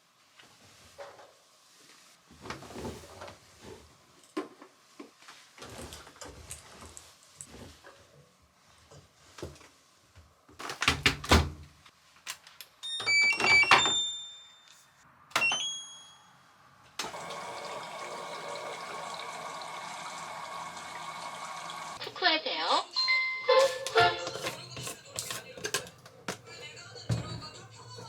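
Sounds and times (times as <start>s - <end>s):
appliance beeping start-up tune: 12.9s - 14.6s, 15.4s - 16.3s, 22.9s - 24.5s
running water: 17.0s - 22.0s
handling clunks: 23.7s - 28.0s.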